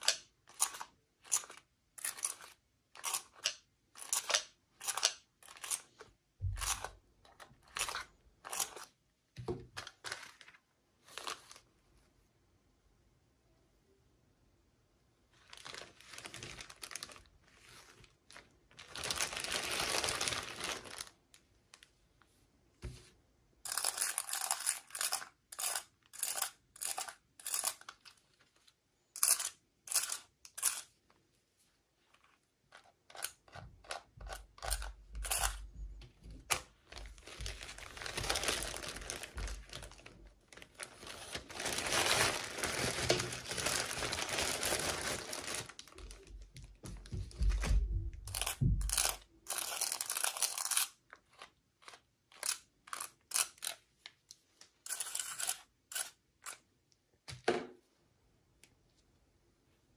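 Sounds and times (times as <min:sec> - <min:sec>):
packaging tearing and crinkling: 0:15.5 - 0:17.3, 0:18.3 - 0:21.1, 0:37.0 - 0:46.2.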